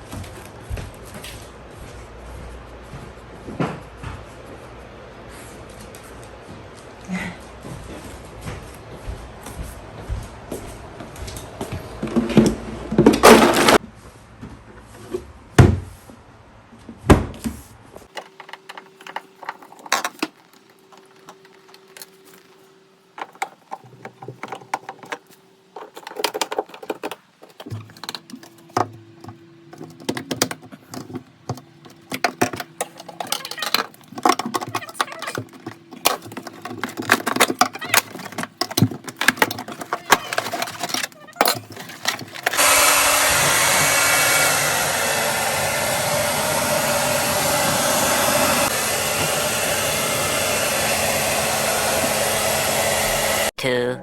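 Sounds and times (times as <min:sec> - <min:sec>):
objects clicking and clattering: 0:18.1 - 0:22.6, 0:23.2 - 0:42.6.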